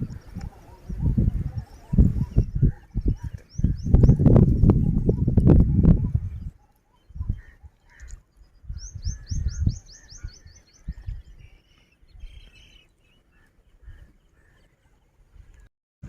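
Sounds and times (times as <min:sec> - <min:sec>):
songbird trilling: 0:06.1 - 0:14.7.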